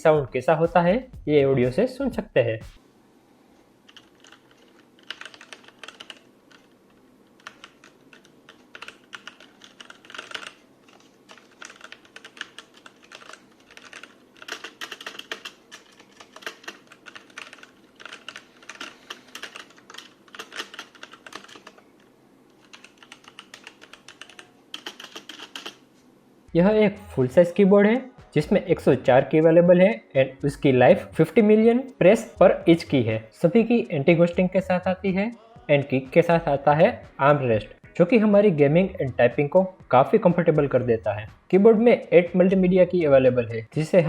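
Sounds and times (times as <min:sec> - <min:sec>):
mechanical keyboard typing: 0:03.9 - 0:21.8, 0:22.6 - 0:25.8.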